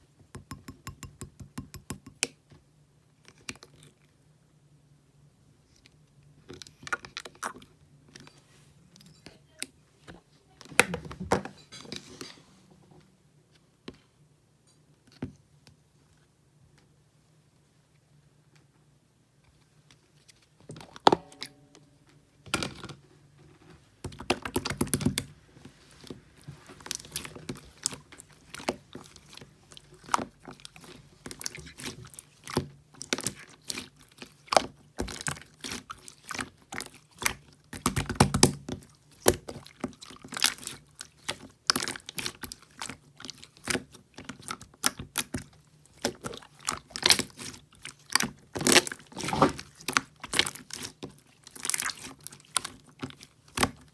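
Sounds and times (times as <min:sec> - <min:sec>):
crinkling rustling: 0:23.4 - 0:53.9.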